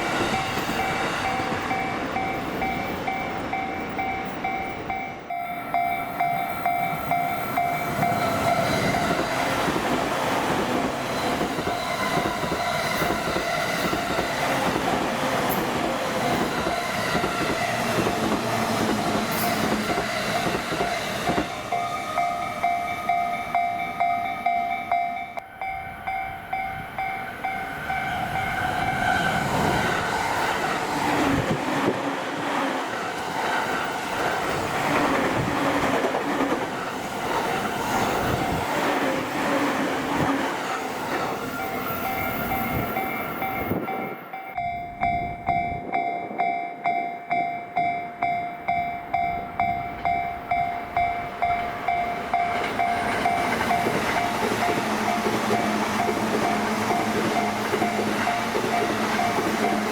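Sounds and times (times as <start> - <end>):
level crossing warning bell: 0.0 - 29.7, 40.8 - 59.9.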